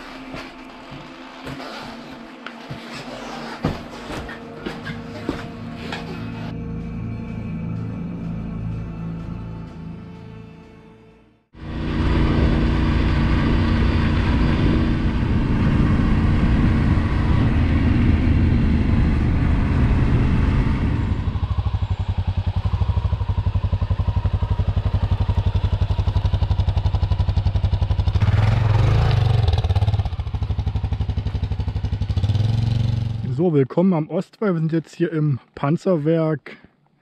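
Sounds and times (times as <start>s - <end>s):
motorcycle engine running: 11.6s - 33.2s.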